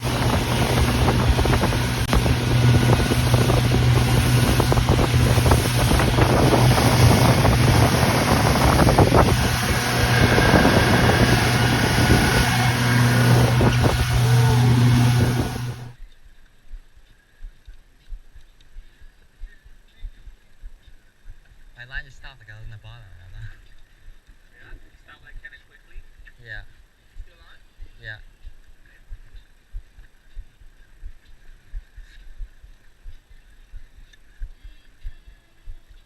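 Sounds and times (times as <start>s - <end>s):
boat motor humming: 0.0s - 16.0s
rush of wind and water: 0.0s - 16.0s.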